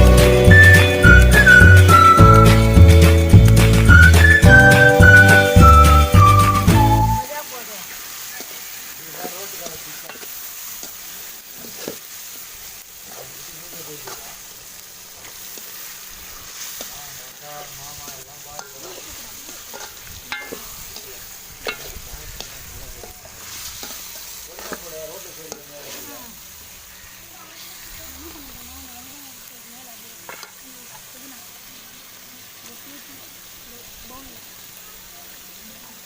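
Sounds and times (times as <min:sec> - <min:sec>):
food sizzling in a pan: 0:00.0 - 0:36.0
spoon knocking against pan: 0:19.7 - 0:20.7, 0:21.6 - 0:22.0.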